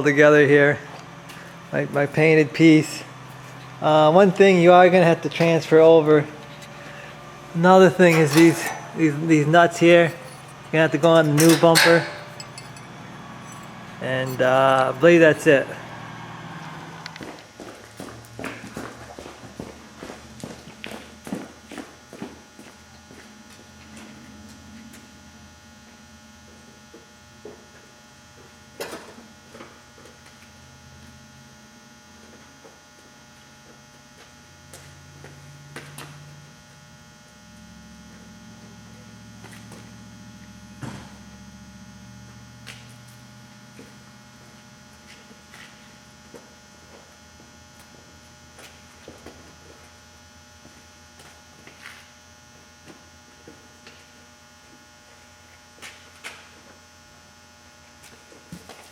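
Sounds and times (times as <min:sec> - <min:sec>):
steady electrical hum: 0:00.0 - 0:16.0
deeper wavering hum: 0:05.8 - 0:16.0
clicks and knocks from handled parts: 0:09.9 - 0:14.6.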